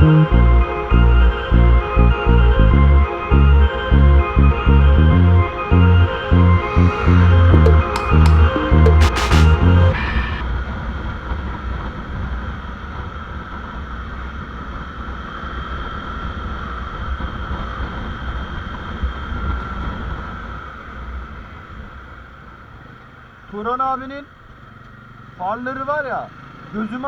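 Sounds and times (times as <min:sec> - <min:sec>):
music beat: 0:04.4 - 0:10.5.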